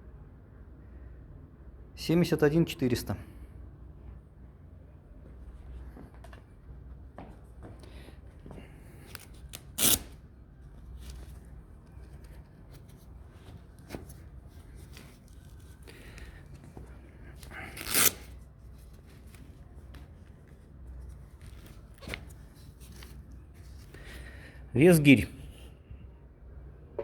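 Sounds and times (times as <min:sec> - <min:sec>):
handling rustles and clicks: 0:10.6 - 0:24.0.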